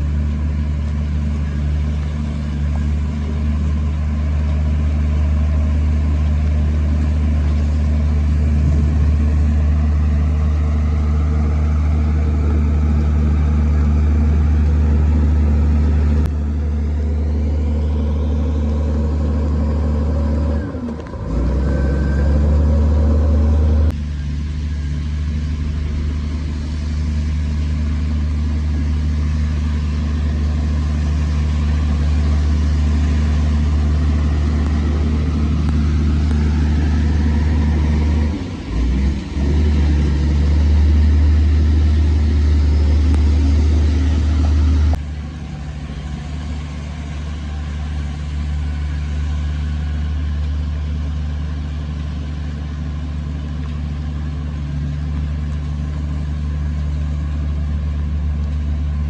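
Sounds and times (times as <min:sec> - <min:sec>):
heavy diesel engine running: 0:00.0 - 0:59.0.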